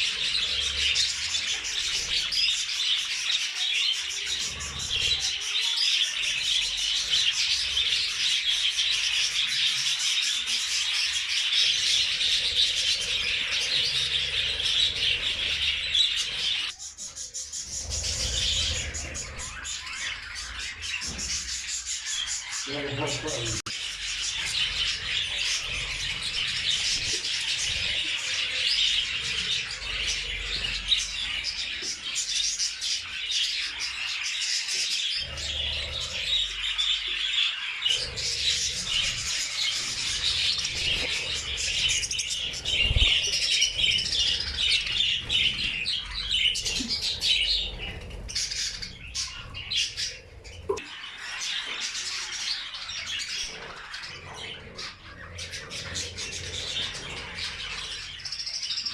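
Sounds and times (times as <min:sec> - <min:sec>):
budgerigars chattering: 0:00.0 - 0:58.9.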